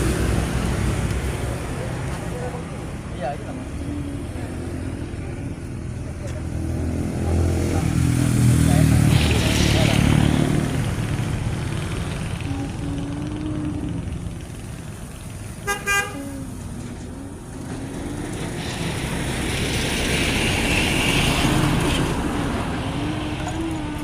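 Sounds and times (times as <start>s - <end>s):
road traffic rumbling: 0.0s - 24.0s
vehicle passing: 0.0s - 24.0s
vehicle horn double toot: 15.6s - 16.5s.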